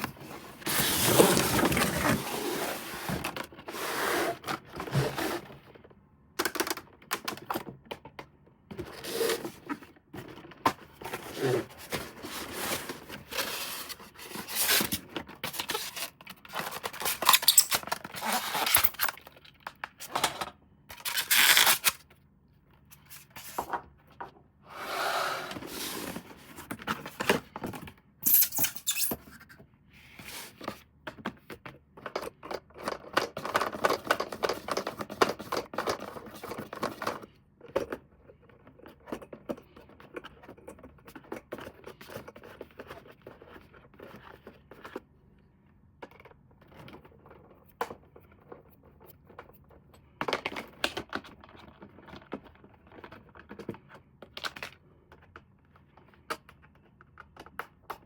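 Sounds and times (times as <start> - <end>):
packaging scraping and rustling: 0.0 - 5.5, 10.9 - 22.1, 24.8 - 27.6.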